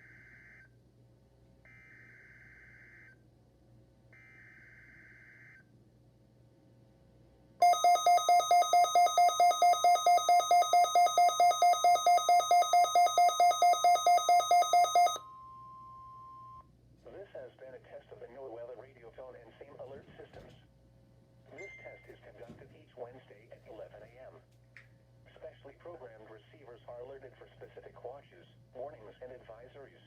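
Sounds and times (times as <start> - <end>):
rapid electronic alarm beeping: 7.6 - 15.2
warbling digital header tones: 7.6 - 15.2.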